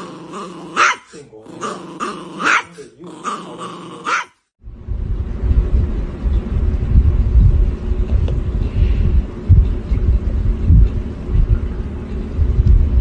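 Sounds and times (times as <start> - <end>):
dog growling: 0.0 - 4.3
loud low rumble: 4.6 - 13.0.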